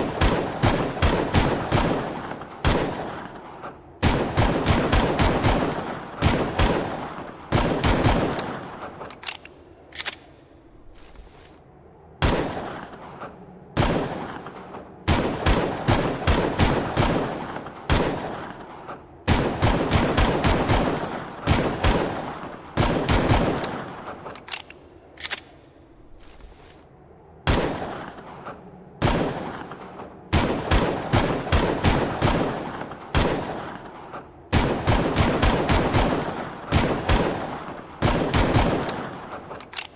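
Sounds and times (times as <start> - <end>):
pistol gunshots echoing: 0.0 - 10.4, 12.2 - 24.4, 27.5 - 39.9.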